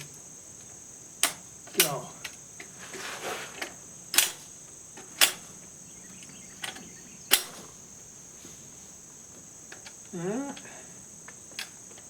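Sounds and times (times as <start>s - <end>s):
crickets chirring: 0.0s - 12.0s
rifle action clicking: 1.2s - 2.4s, 4.1s - 4.5s, 6.6s - 7.7s.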